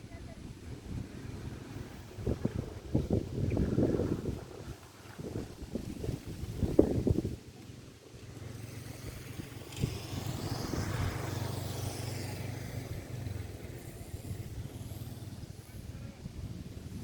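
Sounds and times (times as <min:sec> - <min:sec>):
strong wind on microphone: 0:00.1 - 0:07.4.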